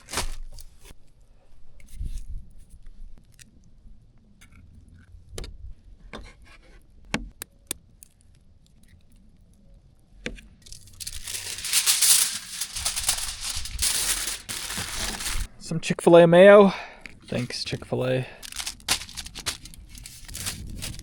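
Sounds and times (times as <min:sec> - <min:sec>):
plastic bag crinkling: 0:00.0 - 0:00.7, 0:10.7 - 0:15.5, 0:18.3 - 0:21.0
packaging clicks and knocks: 0:12.8 - 0:15.5, 0:18.4 - 0:21.0.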